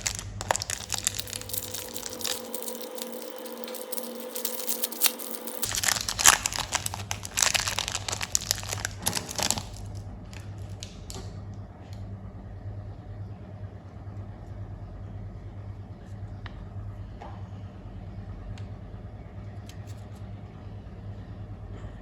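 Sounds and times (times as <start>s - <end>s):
candy wrappers crinkling and tearing: 0.0s - 11.3s
steady low hum: 0.0s - 22.0s.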